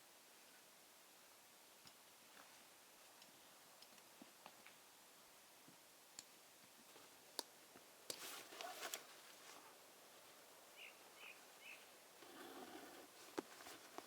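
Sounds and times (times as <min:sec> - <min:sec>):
rustling and crackling leaves: 0:06.5 - 0:14.0
bird chirping: 0:10.7 - 0:11.9.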